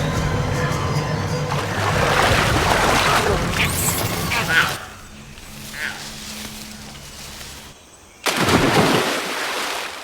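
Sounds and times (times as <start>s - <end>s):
big splash into river: 8.2s - 10.0s.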